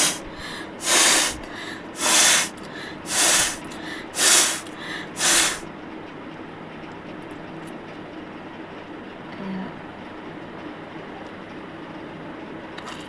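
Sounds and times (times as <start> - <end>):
faint breaths: 0.0 - 5.6
person blowing through nose: 0.0 - 5.6.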